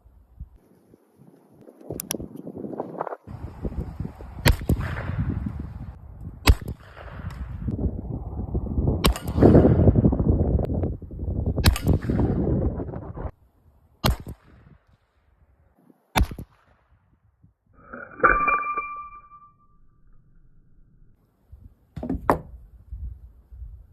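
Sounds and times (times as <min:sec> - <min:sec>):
metallic clang: 0:17.8 - 0:21.1.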